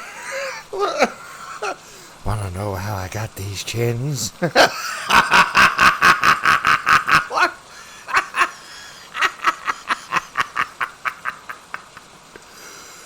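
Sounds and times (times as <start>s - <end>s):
man laughing in staccato bursts: 0.0s - 1.9s, 4.3s - 12.6s.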